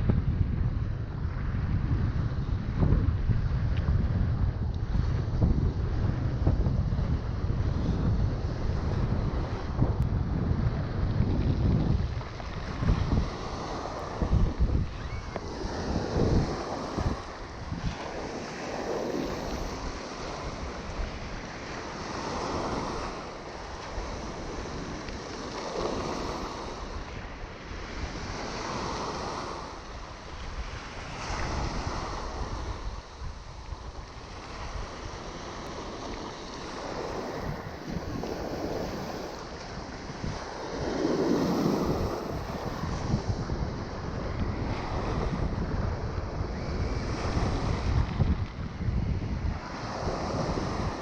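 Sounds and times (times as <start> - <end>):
sea waves breaking on shore: 0.0 - 51.0
wind buffeting microphone: 0.0 - 51.0.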